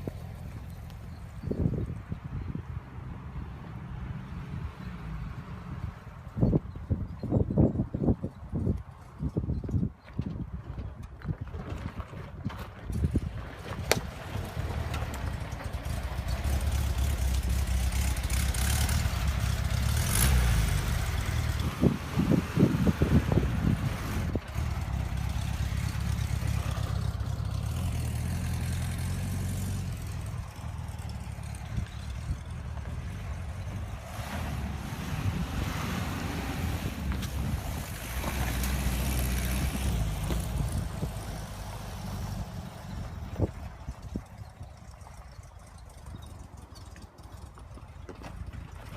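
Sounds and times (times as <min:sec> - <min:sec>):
van engine revving: 0:13.1 - 0:43.7.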